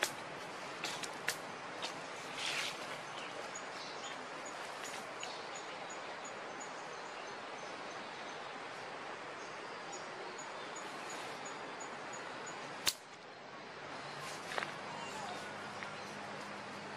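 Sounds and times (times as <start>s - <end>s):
short rustle: 0.0s - 3.5s
sharp clicks: 12.8s - 13.1s.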